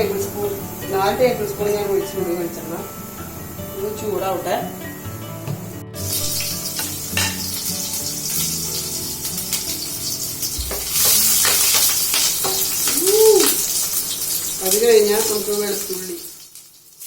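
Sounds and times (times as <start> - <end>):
oil sizzling in a pan: 0.0 - 17.0
spoon knocking while stirring: 10.6 - 12.7.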